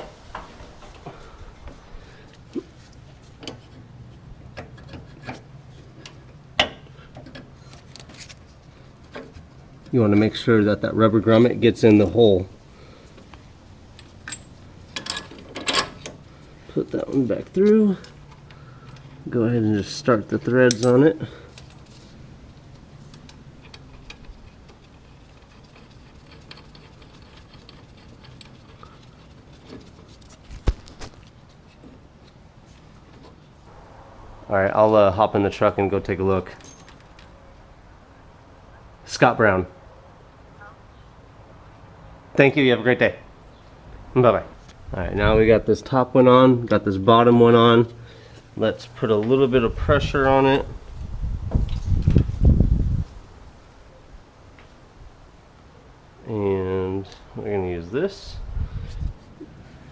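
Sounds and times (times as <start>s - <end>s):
light metal clicks and knocks: 13.2s - 16.2s, 20.7s - 21.9s
small metal clicks and rattles: 22.6s - 31.2s.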